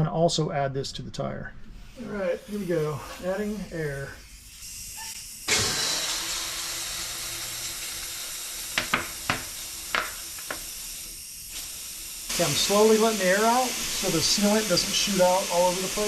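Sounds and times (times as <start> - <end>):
compressed air hissing into tire: 1.9 - 16.0.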